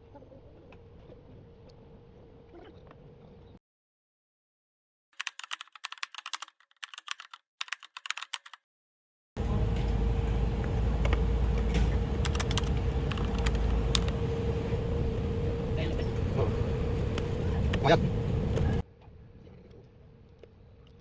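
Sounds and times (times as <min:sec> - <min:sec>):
rapid keyboard-like clicking: 0:05.2 - 0:08.6, 0:12.2 - 0:14.2
car engine rumbling: 0:09.4 - 0:18.8.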